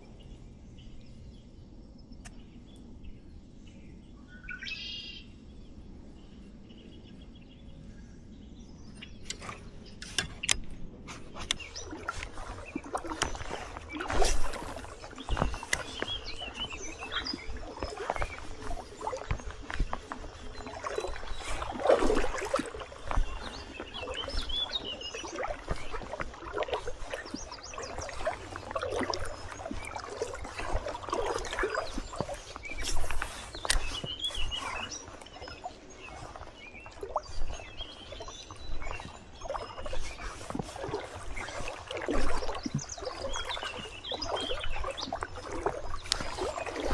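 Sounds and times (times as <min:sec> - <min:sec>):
birds chirping faintly: 0:06.9 - 0:17.8, 0:30.8 - 0:36.9
water sloshing around legs: 0:09.3 - 0:46.9.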